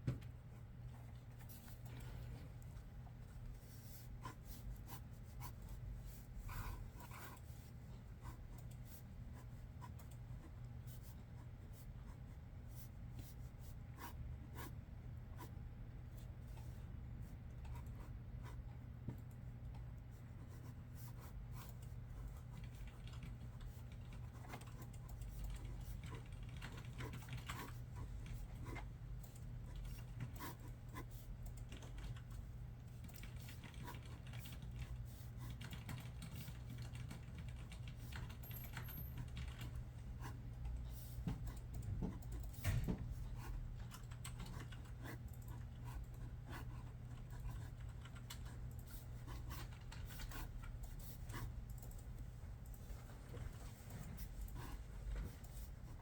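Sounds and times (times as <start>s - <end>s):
low office hum: 0.0s - 56.0s
computer keys clicking: 21.6s - 39.8s, 41.5s - 42.7s, 43.8s - 46.3s, 47.1s - 52.9s.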